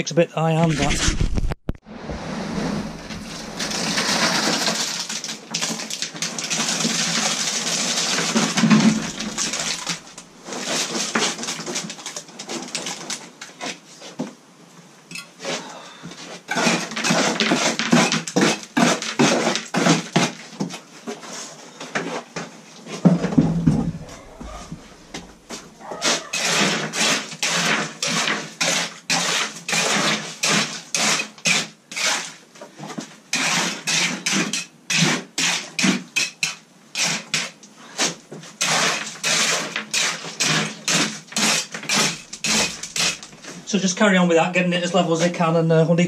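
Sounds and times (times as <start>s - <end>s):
sharp scrapes and knocks: 0.6s - 14.2s, 16.3s - 43.7s
metal tool scraping wet concrete: 7.9s - 11.4s, 23.3s - 32.4s, 33.3s - 43.6s.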